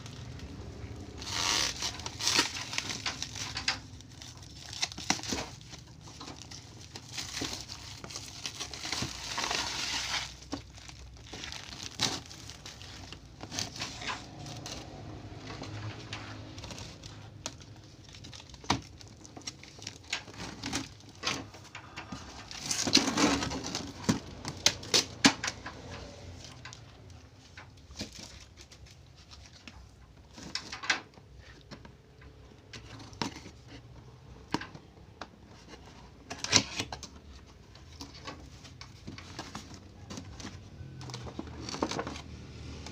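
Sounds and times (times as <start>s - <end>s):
plastic wrapping crinkling: 0.0s - 31.8s.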